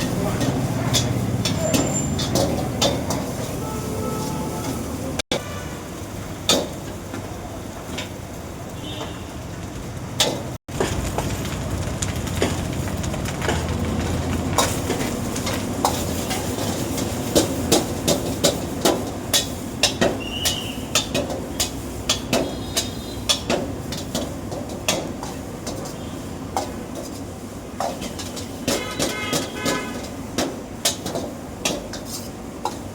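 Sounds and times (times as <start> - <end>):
utensil scraping metal pot: 0.0 - 5.0.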